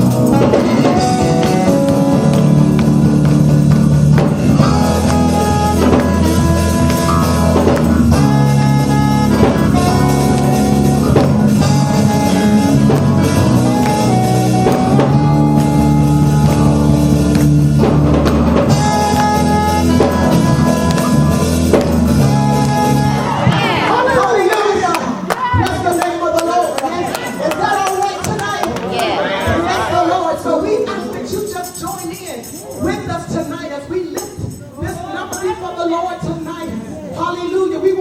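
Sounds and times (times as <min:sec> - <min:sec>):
bass line: 0:00.0 - 0:25.8
drum kit: 0:00.0 - 0:26.9
gospel band playing: 0:00.0 - 0:38.0.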